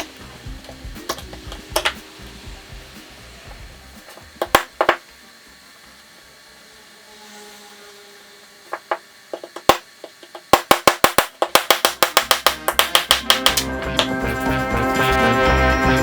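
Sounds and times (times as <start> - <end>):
sharp taps: 9.4 - 14.6.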